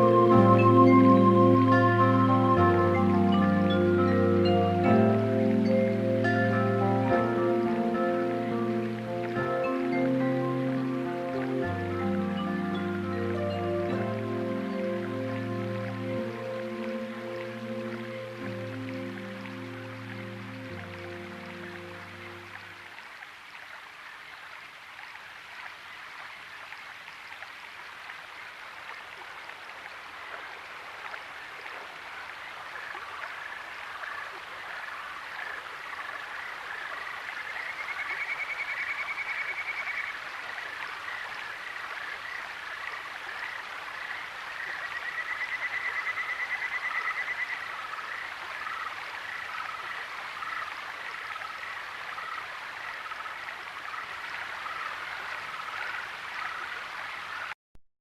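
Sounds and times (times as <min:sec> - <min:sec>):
rushing water: 0:00.0 - 0:57.6
frogs calling: 0:30.5 - 0:57.5
frog fast trills: 0:37.5 - 0:40.3, 0:44.7 - 0:50.6.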